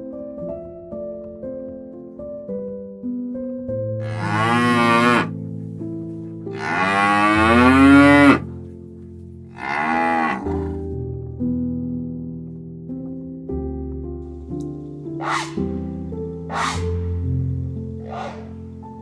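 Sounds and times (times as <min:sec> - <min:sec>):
soft plucked piano-like music: 0:00.0 - 0:19.0
cow mooing: 0:04.0 - 0:05.4, 0:06.5 - 0:08.6, 0:09.5 - 0:10.9, 0:15.2 - 0:15.8, 0:16.5 - 0:17.2, 0:18.0 - 0:18.7.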